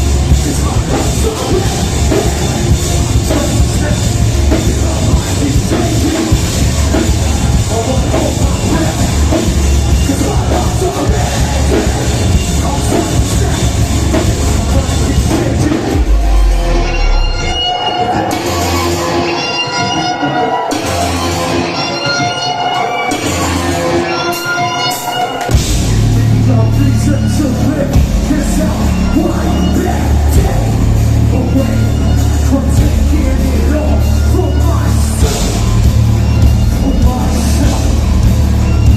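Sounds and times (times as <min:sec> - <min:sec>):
lone guitar: 0:00.0 - 0:24.7
heavy metal band playing live: 0:00.0 - 0:38.9
pounding drum kit: 0:00.0 - 0:38.9
vocals: 0:00.0 - 0:38.9.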